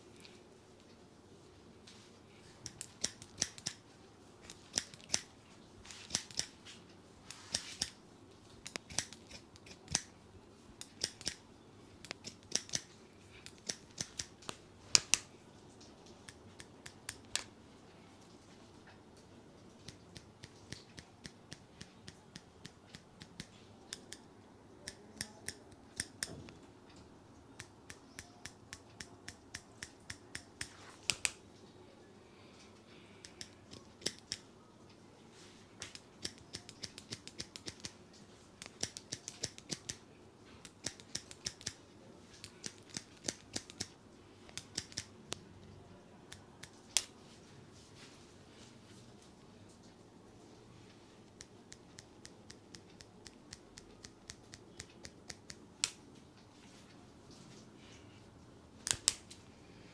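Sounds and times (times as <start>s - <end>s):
scissors snipping hair: 2.6s - 3.8s, 4.4s - 5.3s, 5.9s - 6.6s, 7.3s - 8.0s, 8.6s - 10.1s, 10.8s - 11.4s, 12.0s - 15.3s, 19.8s - 24.2s, 24.8s - 26.4s, 27.6s - 31.4s, 33.2s - 34.5s, 35.8s - 38.0s, 38.6s - 40.0s, 40.6s - 45.1s, 51.3s - 56.0s, 58.8s - 59.4s.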